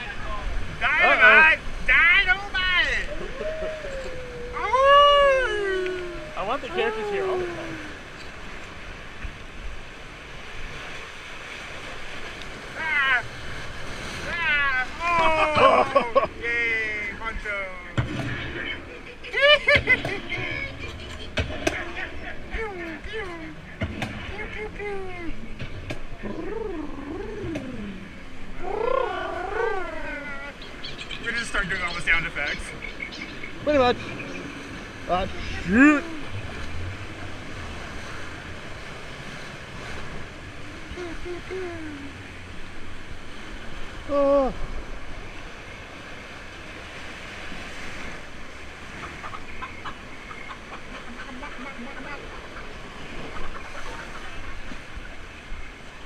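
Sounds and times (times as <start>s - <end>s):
rushing water: 0.0s - 56.0s
person shouting: 2.7s - 8.0s, 28.6s - 30.5s, 40.7s - 42.2s
wavering animal yowls: 3.1s - 8.0s, 26.2s - 30.5s.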